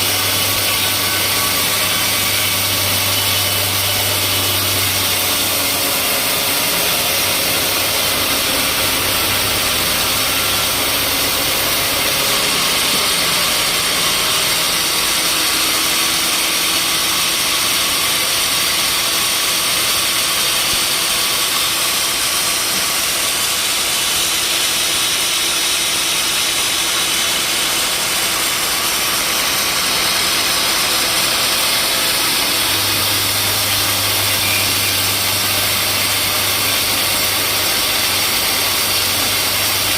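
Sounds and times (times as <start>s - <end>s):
low hum: 0.0s - 16.2s
sawmill machinery running: 0.0s - 39.9s.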